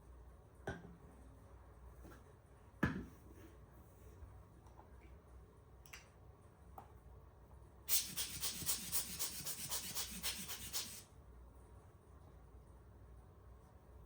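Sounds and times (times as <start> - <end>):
brisk rubbing strokes: 7.9 - 11.0.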